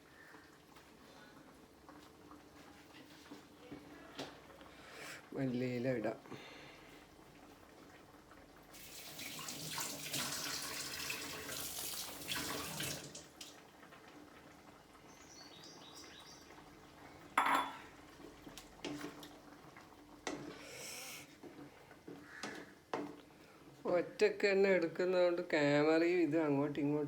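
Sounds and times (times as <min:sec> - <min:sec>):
water running from a tap: 0:08.5 - 0:13.7
pots and utensils clattering: 0:17.4 - 0:17.9.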